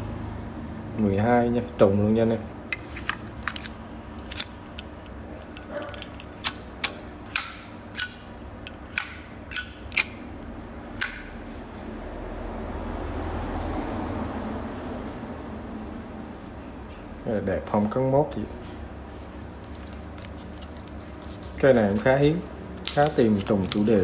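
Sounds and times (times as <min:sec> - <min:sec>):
hinged lid snapping open and shut: 0:02.8 - 0:10.2
lighter clicking with metallic ring: 0:06.4 - 0:10.2, 0:10.9 - 0:11.4.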